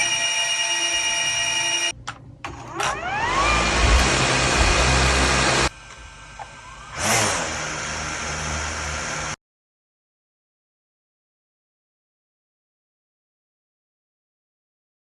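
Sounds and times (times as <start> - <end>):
drone propellers whirring: 2.8 - 9.4.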